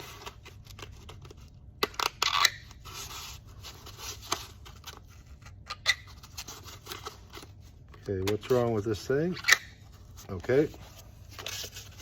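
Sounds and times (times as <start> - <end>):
paper rustling: 9.9 - 12.0.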